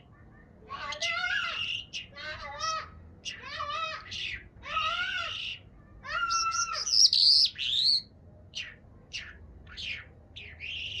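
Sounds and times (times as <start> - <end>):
bird singing: 6.2 - 11.0.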